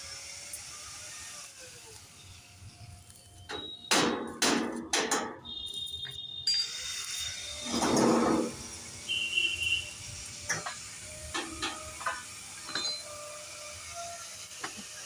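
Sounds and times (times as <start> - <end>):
hammer clanking on metal: 3.5 - 5.5, 10.5 - 13.1
faint metallic ringing: 5.4 - 8.3, 11.9 - 13.2.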